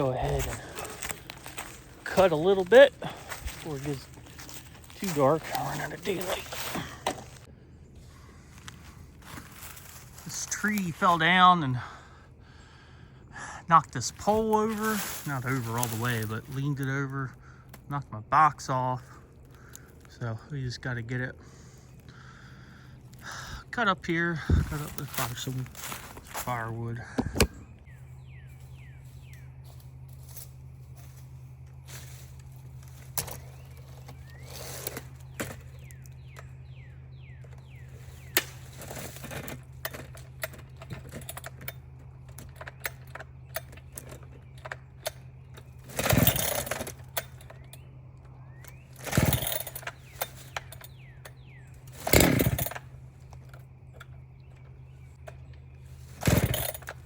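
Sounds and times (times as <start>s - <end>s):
chainsaw idling and revving: 45.6s - 47.8s, 48.5s - 57.0s.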